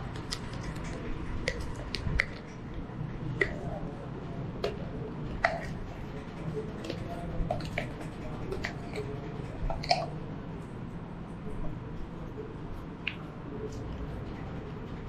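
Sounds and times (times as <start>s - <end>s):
low steady hum: 0.0s - 15.0s
wet squishes and clicks: 0.1s - 2.8s, 6.8s - 10.2s, 13.0s - 13.8s.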